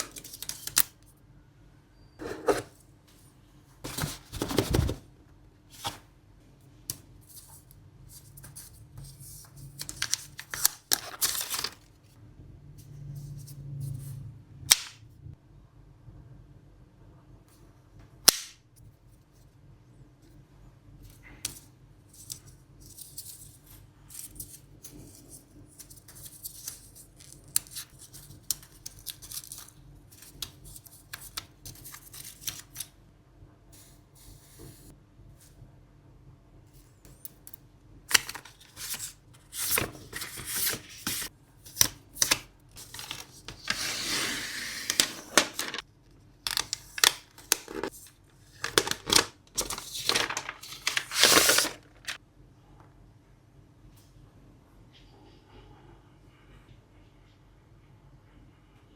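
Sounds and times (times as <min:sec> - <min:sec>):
packing material rustling: 0:09.8 - 0:11.9, 0:38.1 - 0:41.3, 0:42.2 - 0:45.8, 0:46.5 - 0:52.2.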